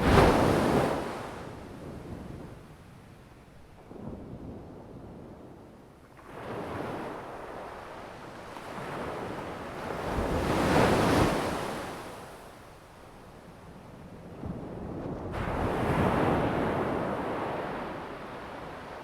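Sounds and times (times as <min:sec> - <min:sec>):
ocean waves breaking: 0:00.0 - 0:01.6.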